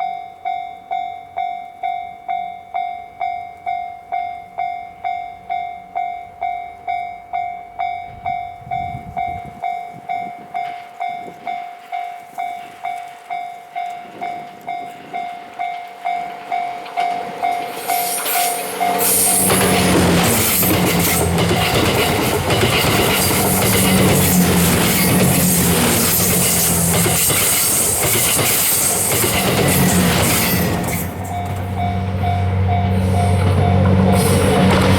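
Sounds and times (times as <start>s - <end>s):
level crossing warning bell: 0.0s - 34.9s
train wheels on rails: 4.4s - 34.9s
diesel train engine hum: 15.0s - 34.9s.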